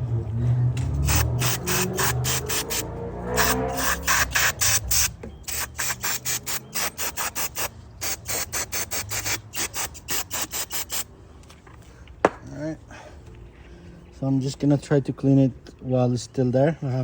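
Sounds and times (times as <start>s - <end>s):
ratchet wrench clicking: 1.0s - 2.8s, 3.4s - 11.0s.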